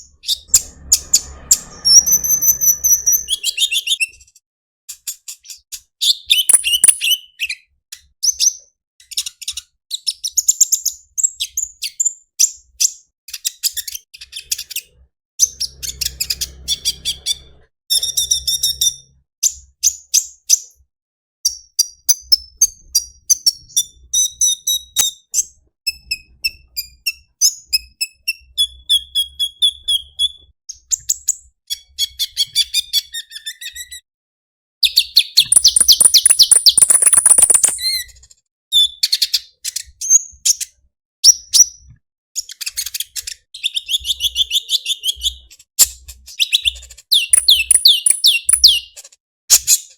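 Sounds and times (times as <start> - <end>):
bird chirping and trilling: 0.2 - 4.2, 6.0 - 7.6, 34.9 - 38.0, 46.4 - 49.0.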